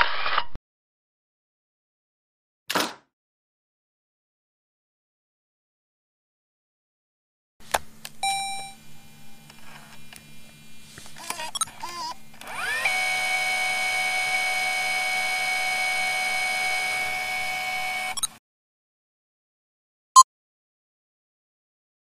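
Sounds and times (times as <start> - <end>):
short electronic beep: 8.2 - 8.8
camera motor whirring: 9.4 - 18.3.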